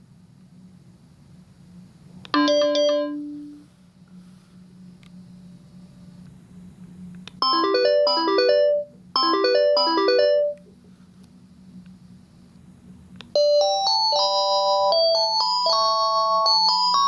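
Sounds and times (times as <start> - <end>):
cordless phone electronic ringtone: 2.4 - 3.6, 7.4 - 10.6, 13.4 - 17.0
slow electronic melody: 2.4 - 3.6.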